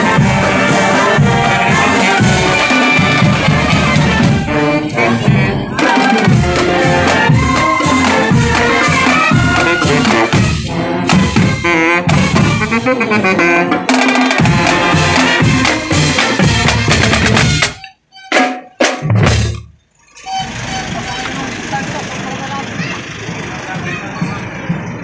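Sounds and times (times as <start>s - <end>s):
marching band playing: 0.0s - 25.0s
drum hit: 13.8s - 19.7s.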